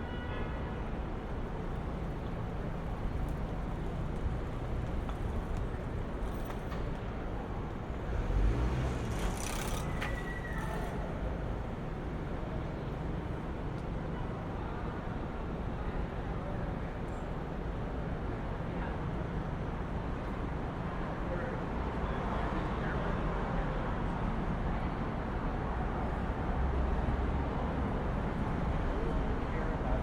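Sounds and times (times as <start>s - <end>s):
traffic rumble: 0.0s - 30.0s
loud vehicle passing: 8.0s - 11.0s.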